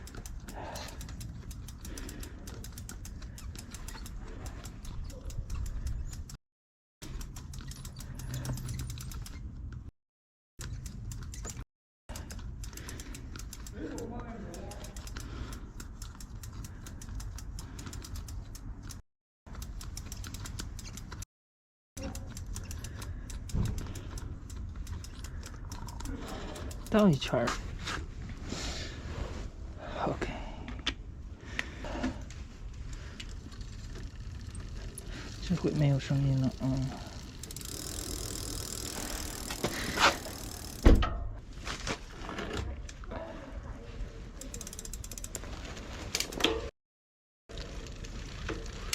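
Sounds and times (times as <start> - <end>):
bike drivetrain ticking: 0.0 - 6.4, 7.0 - 9.8, 10.6 - 21.2, 22.0 - 27.3, 32.8 - 40.9, 44.4 - 46.4
thump: 40.8 - 41.2.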